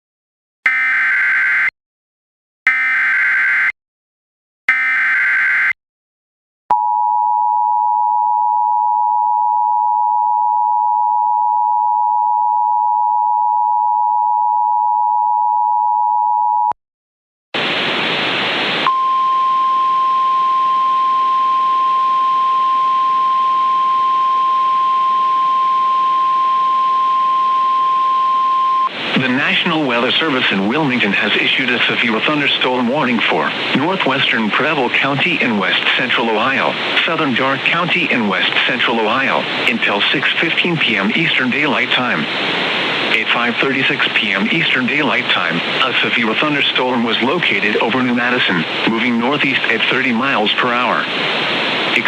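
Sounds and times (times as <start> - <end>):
radio static: 17.6 - 18.9, 28.9 - 52.0
two-tone attention signal: 18.9 - 28.9.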